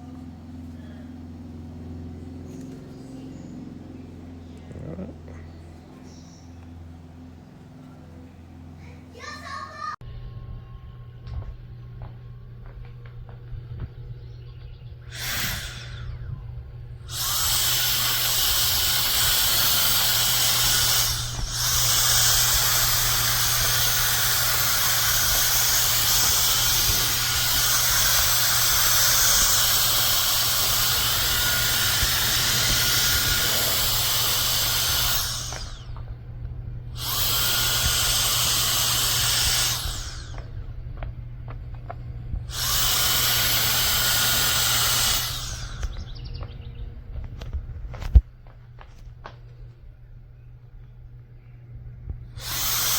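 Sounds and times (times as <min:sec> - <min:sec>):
fan spinning down whine: 0:00.0 - 0:52.9
electric air duster blowing: 0:15.0 - 0:46.5, 0:52.3 - 0:52.9.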